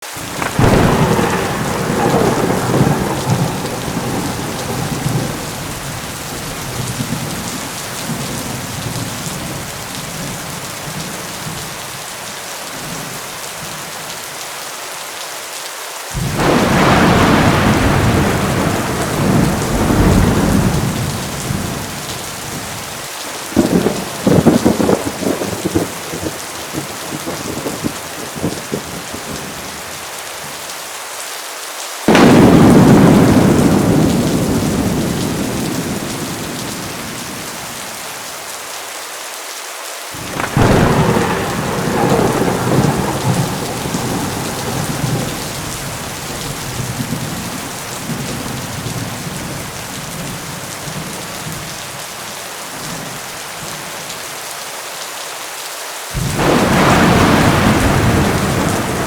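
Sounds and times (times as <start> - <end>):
heavy rain falling: 0.0 - 59.0
crackling thunder peal: 0.2 - 11.8, 16.2 - 29.8, 32.1 - 38.2, 40.2 - 51.9, 56.2 - 59.0
rolling thunder: 0.3 - 11.8, 16.2 - 29.8, 32.1 - 38.1, 40.2 - 51.8, 56.2 - 59.0.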